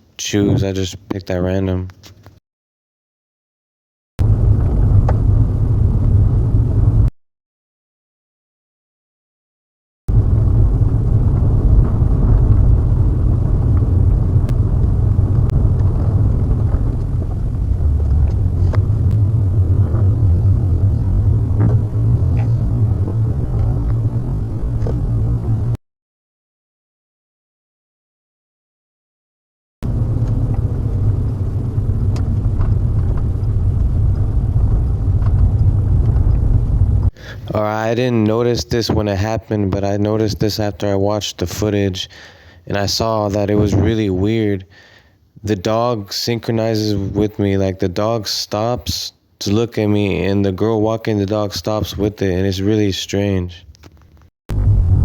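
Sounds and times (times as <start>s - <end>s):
car road and engine rumble: 4.2s - 7.1s, 10.1s - 25.8s, 29.8s - 37.1s, 54.5s - 55.0s.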